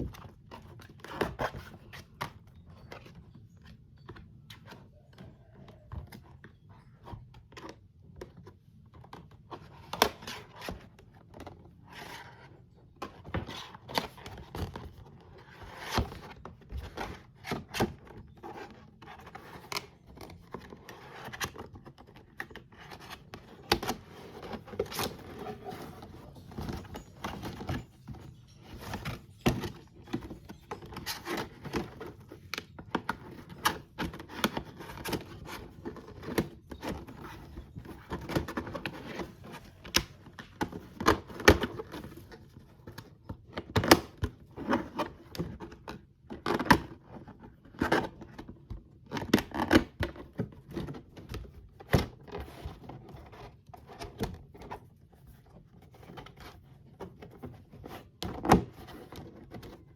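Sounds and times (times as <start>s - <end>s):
rubbing and scraping: 13.4s - 42.9s.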